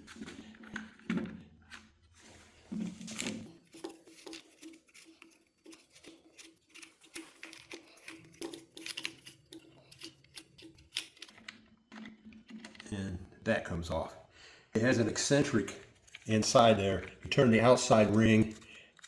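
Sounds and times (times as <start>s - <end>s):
plastic parts clicking and handling: 3.5s - 13.0s, 15.7s - 19.0s.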